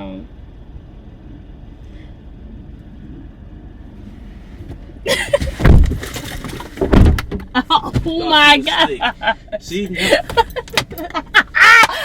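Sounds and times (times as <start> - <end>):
low rumble: 0.2 - 5.0
loud thumps and knocks: 4.7 - 8.2.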